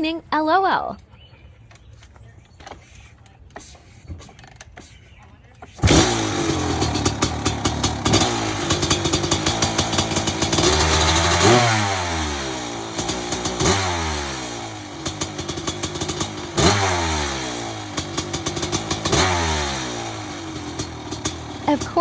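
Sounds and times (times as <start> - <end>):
dirt bike engine revving: 5.7 - 22.0.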